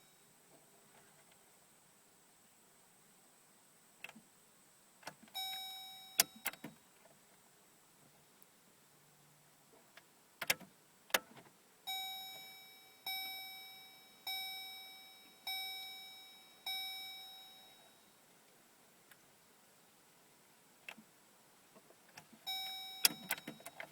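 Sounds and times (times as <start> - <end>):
car warning chime dings: 5.4 - 6.8, 11.9 - 18.2, 22.5 - 23.9.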